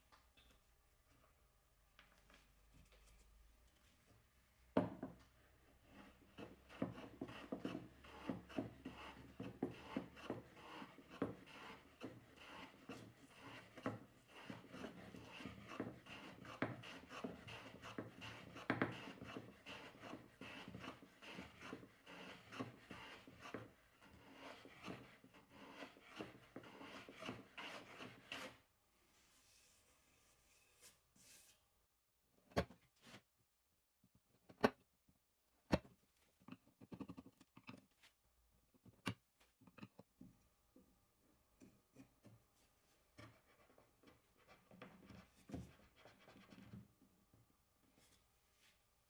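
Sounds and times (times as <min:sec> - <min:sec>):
rubbing and scraping on wood: 0:05.9 - 0:28.6.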